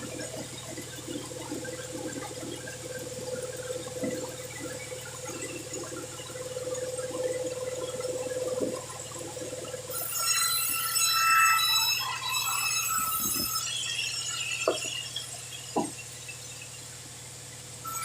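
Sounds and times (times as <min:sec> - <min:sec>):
irregular crackling gurgling: 0:00.0 - 0:09.9
sawmill motor hum and blade tone: 0:00.0 - 0:16.9.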